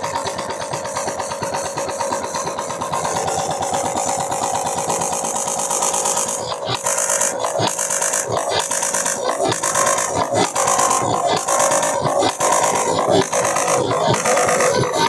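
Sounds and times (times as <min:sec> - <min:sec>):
distorted music with pulsing beat: 0:05.9 - 0:15.0.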